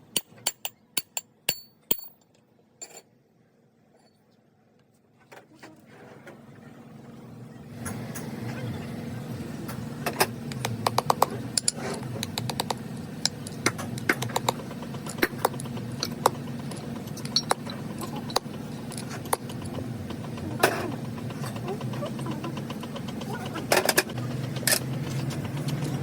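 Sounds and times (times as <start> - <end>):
low machine hum: 5.9 - 26.0.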